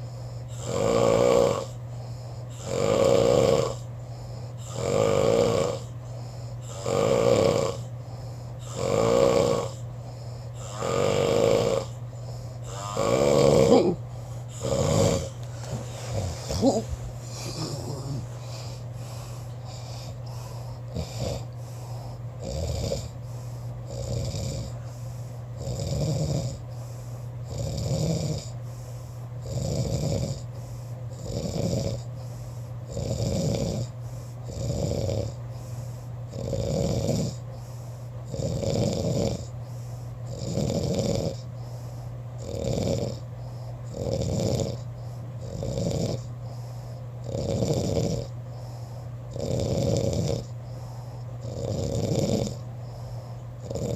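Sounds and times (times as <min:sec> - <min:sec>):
steady low hum: 0:00.0 - 0:53.9
person snoring: 0:00.5 - 0:01.8, 0:02.5 - 0:03.9, 0:04.6 - 0:07.9, 0:08.6 - 0:23.2, 0:23.9 - 0:25.0, 0:25.6 - 0:26.6, 0:27.5 - 0:28.6, 0:29.4 - 0:30.4, 0:31.1 - 0:32.1, 0:32.9 - 0:33.9, 0:34.5 - 0:35.4, 0:36.3 - 0:37.4, 0:38.3 - 0:39.5, 0:40.3 - 0:41.5, 0:42.4 - 0:44.8, 0:45.4 - 0:46.6, 0:47.2 - 0:53.9.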